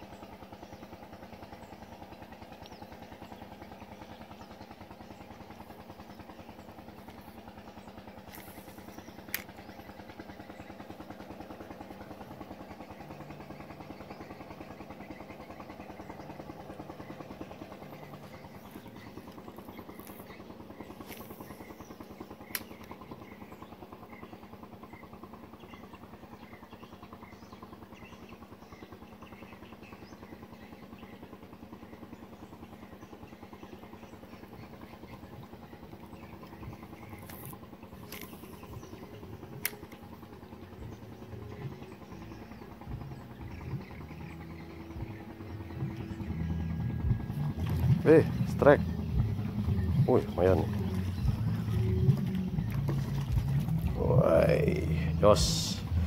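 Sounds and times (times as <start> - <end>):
engine running: 0.0 - 56.0
sharp clicks: 8.3 - 9.7, 22.4 - 23.0, 36.4 - 38.7, 39.5 - 40.2.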